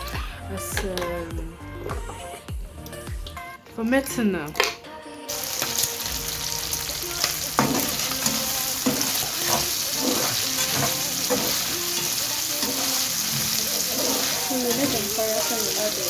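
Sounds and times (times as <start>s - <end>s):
snails sizzling in hot oil: 5.3s - 16.0s.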